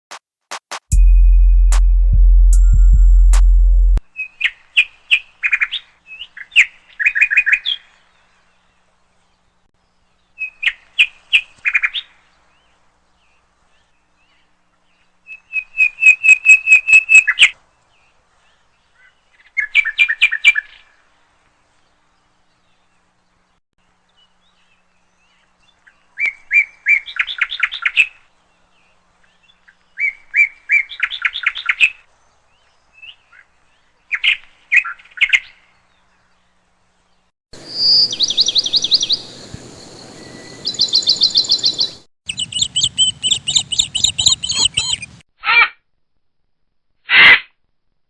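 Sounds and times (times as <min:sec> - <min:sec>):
budgerigars chirping and trilling: 0:40.6 - 0:45.2.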